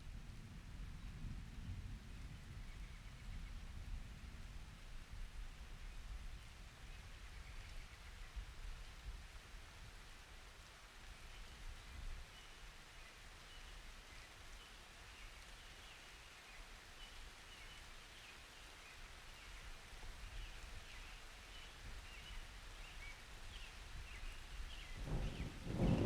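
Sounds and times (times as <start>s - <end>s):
low rumble of thunder: 0.0s - 6.6s, 24.0s - 26.0s
light rain hiss: 0.0s - 26.0s.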